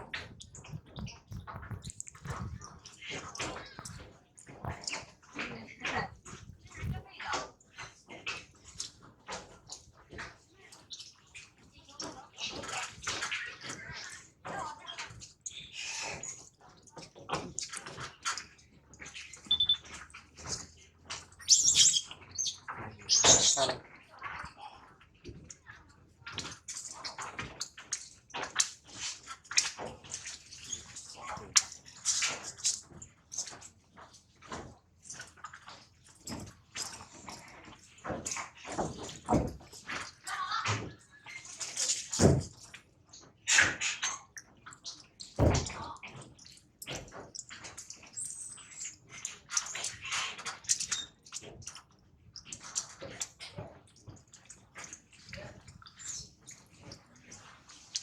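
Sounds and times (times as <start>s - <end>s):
water splashing and sloshing: 0.0s - 58.0s.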